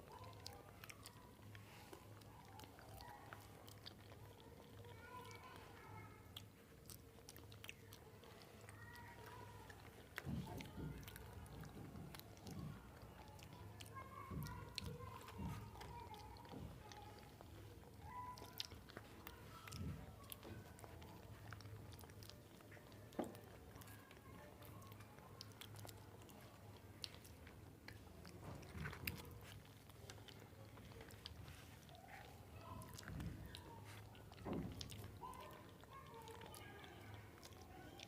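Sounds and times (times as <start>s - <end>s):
faint low hum: 0.0s - 38.0s
people chewing bananas: 0.0s - 38.0s.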